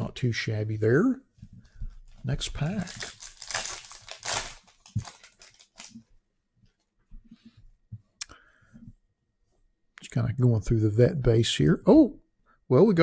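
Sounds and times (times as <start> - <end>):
cards being handled: 1.6 - 6.0
card pack wrapper tearing: 2.6 - 6.0.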